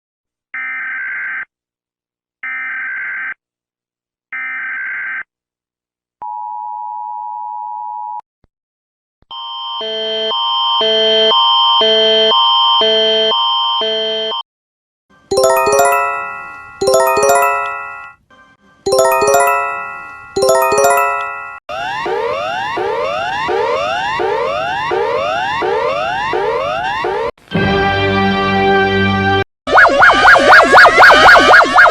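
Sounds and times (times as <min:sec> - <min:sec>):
alternating tone chords alert: 0:15.3 - 0:18.1, 0:18.9 - 0:21.6
two-tone attention signal: 0:15.3 - 0:18.1.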